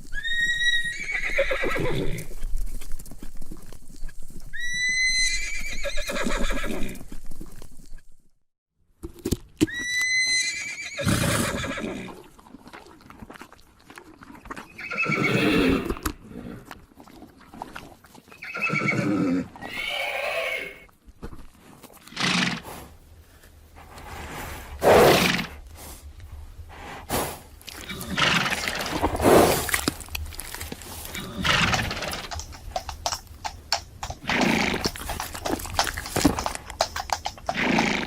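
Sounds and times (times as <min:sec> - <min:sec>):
horse neighing: 0:00.2 - 0:02.3, 0:04.6 - 0:07.0, 0:09.7 - 0:12.1, 0:14.7 - 0:16.6, 0:18.4 - 0:20.9, 0:27.8 - 0:29.7, 0:31.1 - 0:32.9, 0:34.1 - 0:38.0.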